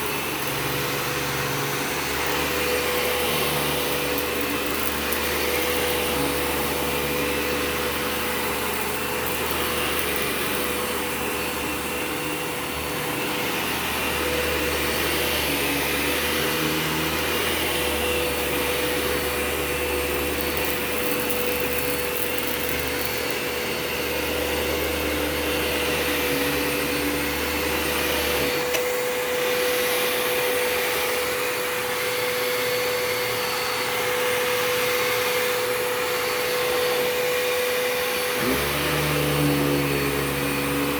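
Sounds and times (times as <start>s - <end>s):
vacuum cleaner motor whining: 0.0s - 40.9s.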